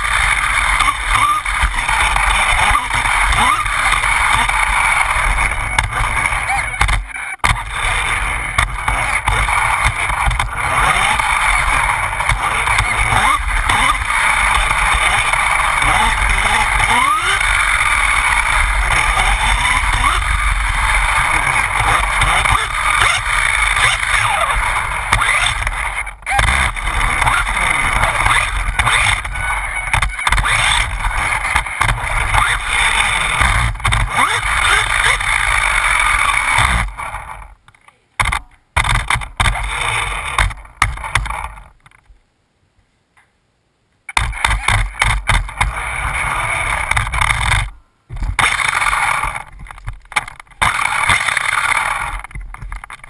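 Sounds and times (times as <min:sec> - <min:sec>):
rc car motor running: 0:00.0 - 0:37.6, 0:38.2 - 0:41.7, 0:44.2 - 0:53.0.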